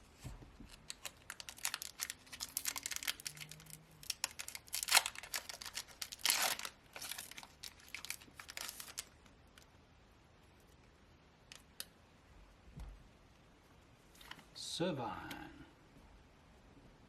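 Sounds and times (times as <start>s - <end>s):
foil wrapper ripping: 0.7s - 9.2s
foil wrapper crinkling: 0.7s - 9.7s.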